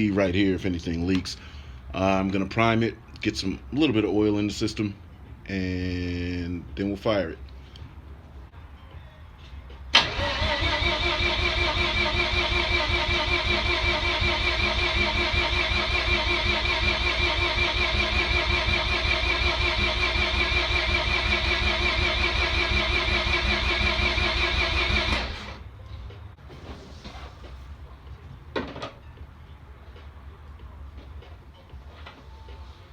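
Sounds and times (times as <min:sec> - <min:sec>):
starter motor cranking engine: 0:10.0 - 0:25.6.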